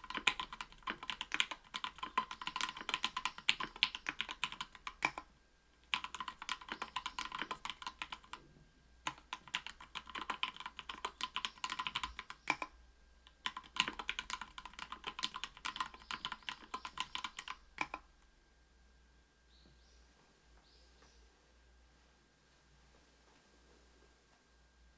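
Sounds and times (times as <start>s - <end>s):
mechanical keyboard typing: 0.0s - 8.4s, 9.0s - 12.7s, 13.3s - 18.0s.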